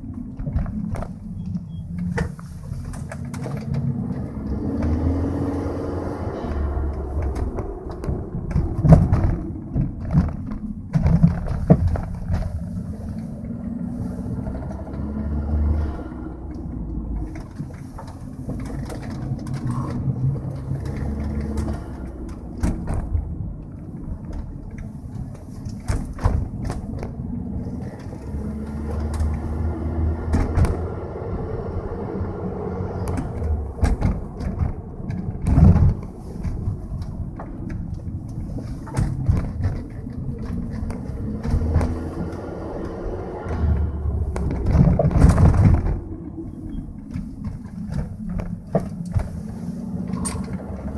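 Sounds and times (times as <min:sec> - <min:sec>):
car knocks and thumps over bumps: 0:00.0 - 0:50.9
engine and road rumble: 0:00.0 - 0:50.9.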